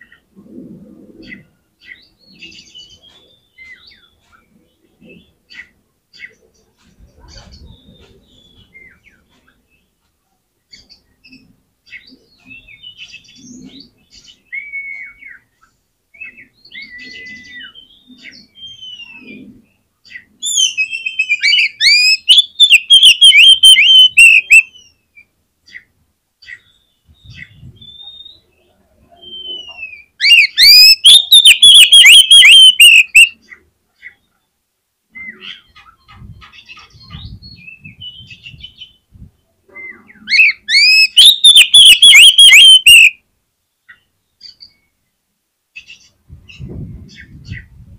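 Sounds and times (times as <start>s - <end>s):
bird singing whistled phrases: 14.5s - 15.4s, 16.7s - 19.2s, 20.4s - 24.9s, 29.2s - 33.4s, 39.8s - 43.2s
rapid sweeping bird notes: 20.5s - 24.7s, 30.3s - 33.4s, 40.4s - 43.1s.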